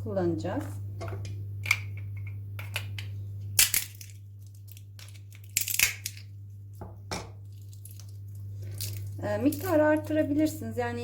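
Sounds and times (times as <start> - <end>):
walnut shells cracking: 1.6 - 6.3, 7.5 - 9.7.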